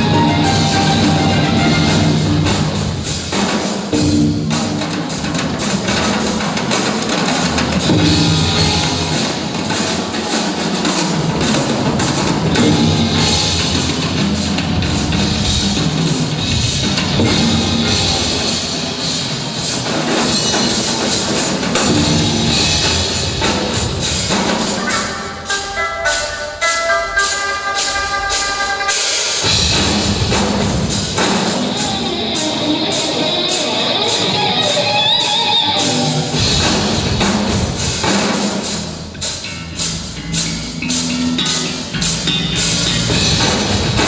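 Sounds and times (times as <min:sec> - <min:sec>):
drum kit playing fast strokes: 0:00.0 - 0:44.0.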